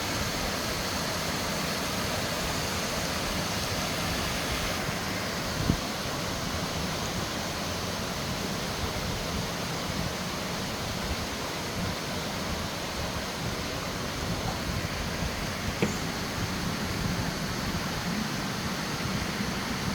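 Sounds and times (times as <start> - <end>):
stream water rushing: 0.0 - 19.9
brief thump: 15.6 - 16.4.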